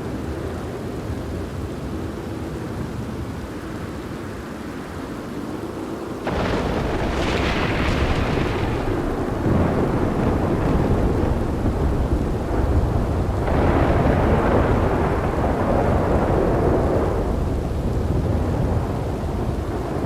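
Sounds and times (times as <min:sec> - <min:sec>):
steady rain: 0:00.0 - 0:20.0
loud crackling thunderclap: 0:06.2 - 0:20.0
thunder rumble: 0:06.2 - 0:20.0.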